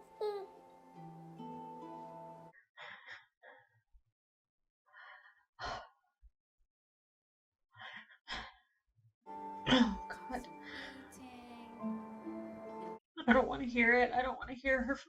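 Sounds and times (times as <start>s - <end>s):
woman sighing and breathing heavily: 0.0s - 0.6s, 9.6s - 11.5s.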